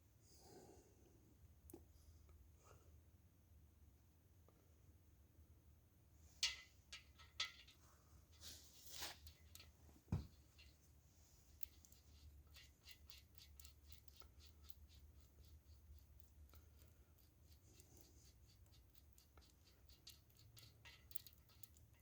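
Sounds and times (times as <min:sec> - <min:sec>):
faint scratching and ticks: 0:08.3 - 0:22.0.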